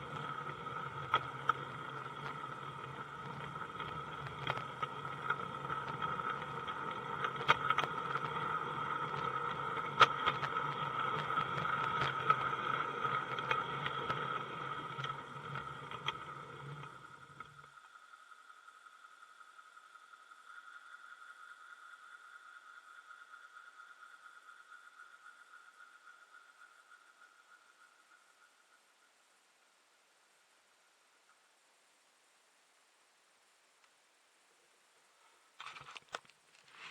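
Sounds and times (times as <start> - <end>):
model train running: 0.0 - 17.6
wheels clicking on track: 0.0 - 17.8.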